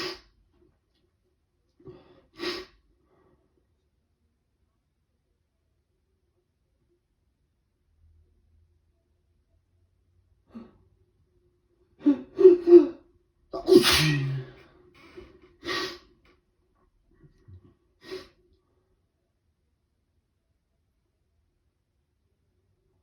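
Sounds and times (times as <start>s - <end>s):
person sneezing: 13.6s - 16.0s.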